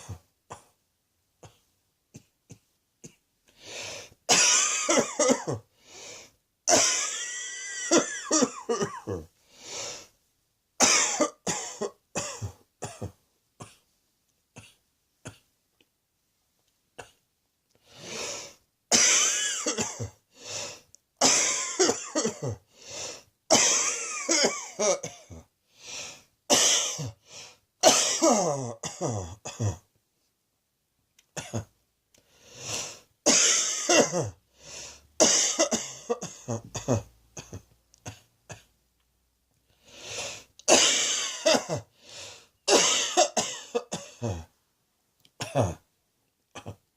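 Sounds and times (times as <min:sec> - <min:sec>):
person coughing: 0:00.0 - 0:00.8, 0:04.3 - 0:05.7, 0:06.7 - 0:09.3, 0:10.8 - 0:13.9, 0:18.9 - 0:20.2, 0:21.2 - 0:22.7, 0:23.5 - 0:25.5, 0:26.5 - 0:27.2, 0:27.8 - 0:29.9, 0:31.4 - 0:31.7, 0:33.3 - 0:34.4, 0:35.2 - 0:38.7, 0:40.7 - 0:41.9, 0:42.7 - 0:44.6, 0:45.4 - 0:45.9, 0:46.6 - 0:46.8.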